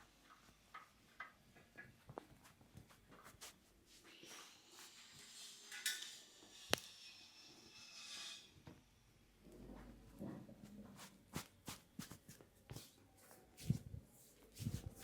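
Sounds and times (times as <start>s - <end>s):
hands rubbing and tapping hair: 0.4s - 3.8s, 10.8s - 15.0s.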